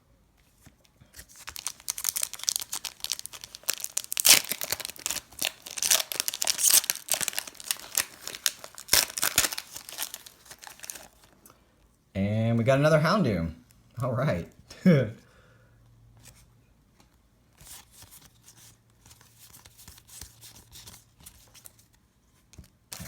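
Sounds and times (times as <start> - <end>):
wrapper crinkling and tearing: 1.2 - 11.4.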